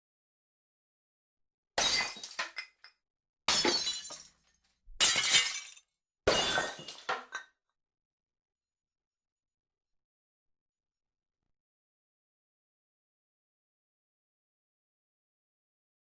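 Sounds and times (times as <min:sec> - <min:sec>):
glass shattering: 0:01.8 - 0:02.9, 0:03.5 - 0:04.4, 0:05.0 - 0:07.4.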